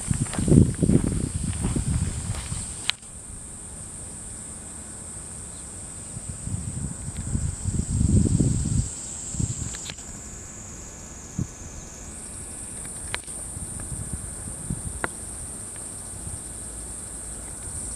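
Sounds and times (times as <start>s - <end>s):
insects droning: 0.0s - 17.9s
faint sharp clicks: 12.8s - 13.9s.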